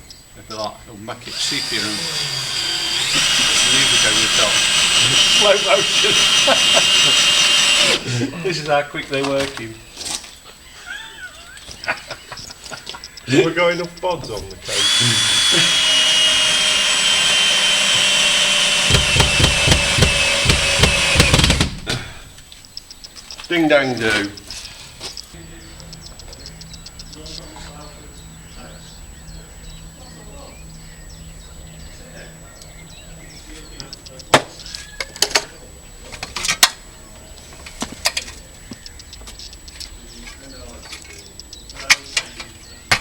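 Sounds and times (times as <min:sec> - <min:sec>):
power drill whining: 0:01.2 - 0:08.6, 0:14.5 - 0:22.0
sharp construction knocks and clicks: 0:11.8 - 0:23.5, 0:33.8 - 0:35.5, 0:40.8 - 0:43.0.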